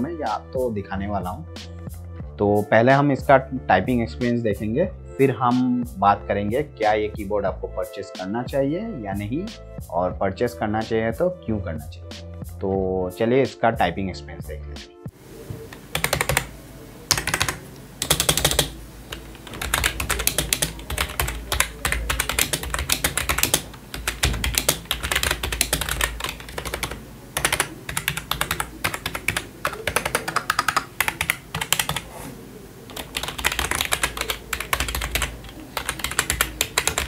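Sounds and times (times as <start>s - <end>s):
fast keyboard typing: 15.9s - 16.5s, 17.1s - 32.1s, 32.9s - 37.0s.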